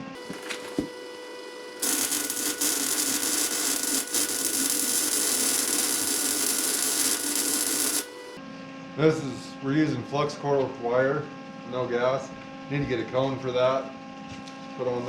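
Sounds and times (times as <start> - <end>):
welding arc crackling: 0.0 - 8.4.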